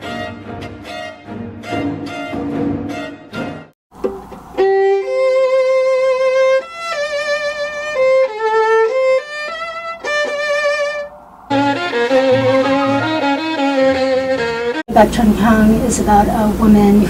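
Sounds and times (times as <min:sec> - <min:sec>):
solo violin melody: 0:00.0 - 0:02.3, 0:04.5 - 0:14.8.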